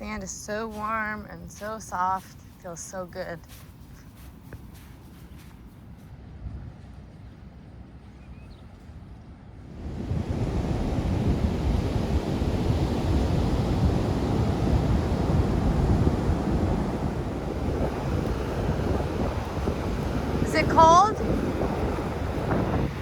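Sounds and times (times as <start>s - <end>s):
ocean surf breaking: 0.0s - 3.6s, 9.7s - 23.0s
wind buffeting microphone: 0.0s - 23.0s.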